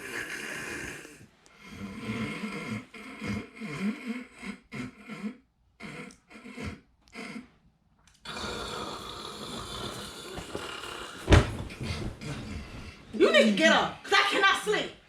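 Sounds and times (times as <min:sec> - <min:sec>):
man snoring: 0:00.0 - 0:07.4, 0:08.2 - 0:11.5.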